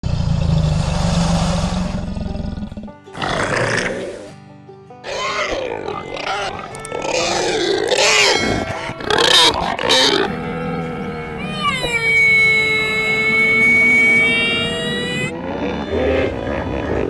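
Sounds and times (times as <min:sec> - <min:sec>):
rough animal roar: 0:00.1 - 0:04.3, 0:05.0 - 0:17.0
music: 0:02.2 - 0:15.4
wavering animal cries: 0:05.0 - 0:16.7.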